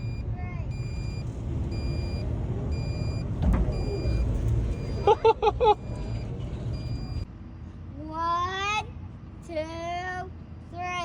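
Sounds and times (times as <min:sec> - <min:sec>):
high-pitched alarm beeps: 0:00.0 - 0:07.3
diesel engine rumbling: 0:00.0 - 0:08.8.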